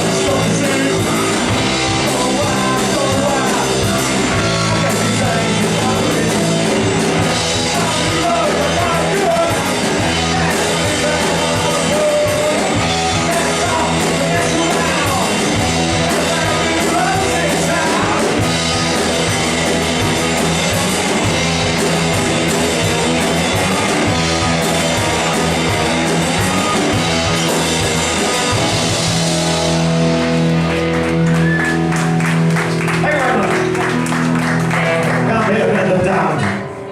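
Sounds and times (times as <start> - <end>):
lead vocal singing: 0.0 - 19.0
drums: 0.0 - 36.9
electric guitars: 0.0 - 36.9.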